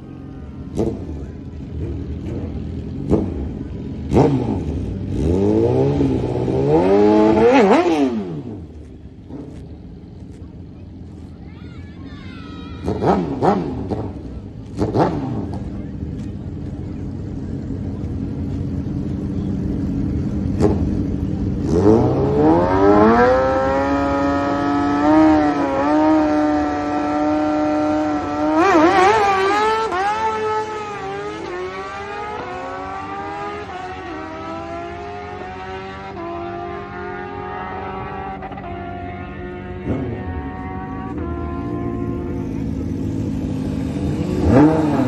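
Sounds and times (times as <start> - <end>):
drag racing engine revving: 12.8 - 45.0.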